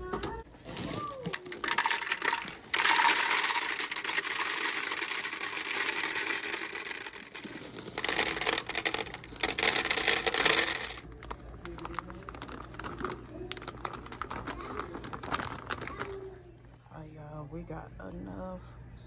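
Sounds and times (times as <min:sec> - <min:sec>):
small hard pieces being poured: 0:00.7 - 0:11.1.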